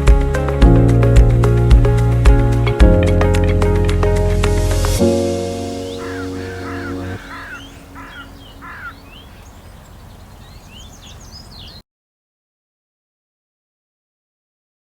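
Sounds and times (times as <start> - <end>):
background music: 0.0 - 8.8
bird chirping: 5.8 - 11.8.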